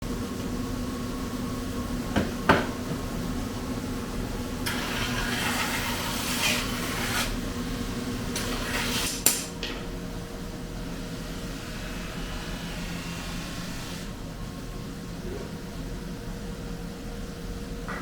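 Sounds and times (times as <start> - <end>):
knife scraping metal: 4.7 - 7.4.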